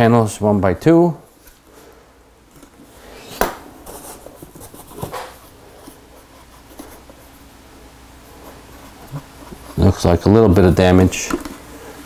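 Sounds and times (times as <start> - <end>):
rubbing and scraping: 3.1 - 7.4, 8.2 - 11.3.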